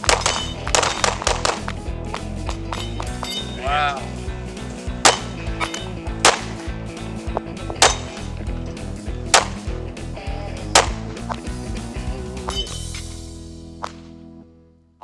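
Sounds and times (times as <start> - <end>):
background music with sharp snaps: 0.0 - 3.4, 4.5 - 10.0, 10.6 - 11.8, 12.4 - 14.2.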